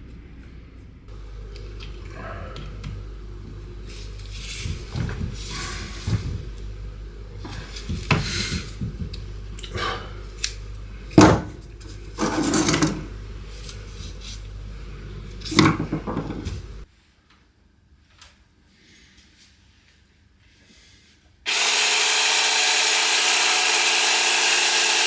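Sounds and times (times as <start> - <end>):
steady low hum: 0.0 - 16.9.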